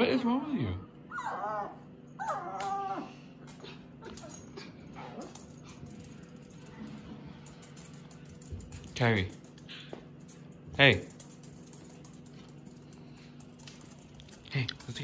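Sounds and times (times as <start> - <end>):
dog whining: 1.1 - 5.4.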